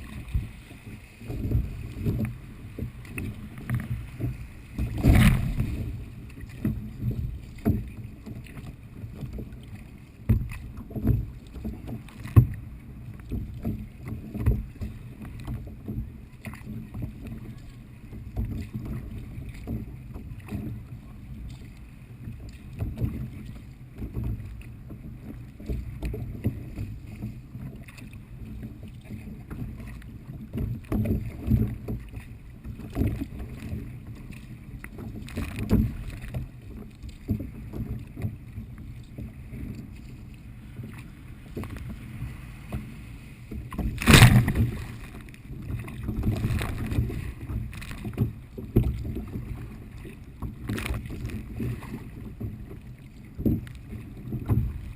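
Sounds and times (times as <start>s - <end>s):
kayak paddle splashes: 0.0s - 54.9s
water sloshing against kayak: 0.0s - 54.9s.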